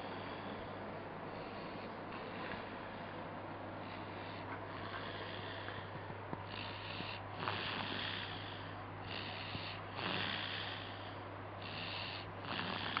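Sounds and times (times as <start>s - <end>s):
person snoring: 6.5s - 13.0s.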